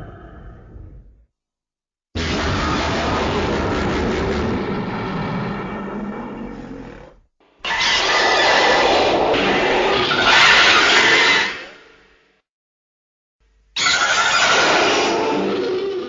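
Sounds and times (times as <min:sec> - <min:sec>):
pulsing monster roar: 0:02.2 - 0:11.5.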